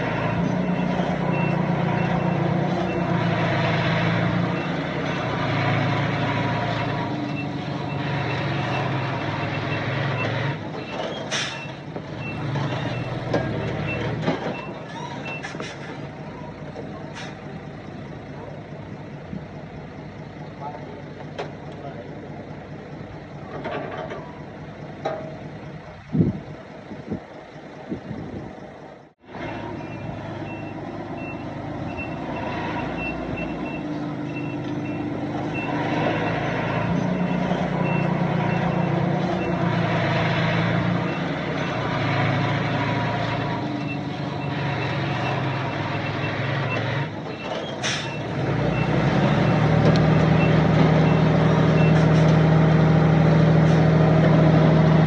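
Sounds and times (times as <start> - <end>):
construction vehicle engine running: 0.0 - 55.0
reversing alarm beeping: 0.1 - 3.2, 29.7 - 39.7.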